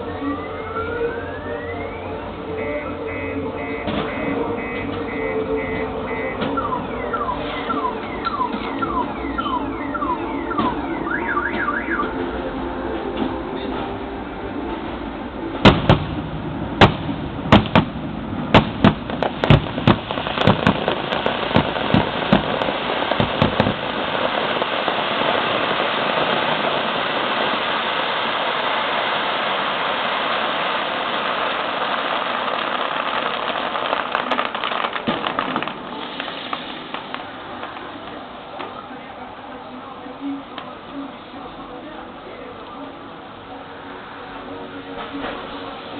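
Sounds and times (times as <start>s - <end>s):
fireworks crackling: 0.0s - 45.9s
firework shell bursts: 18.6s - 37.4s.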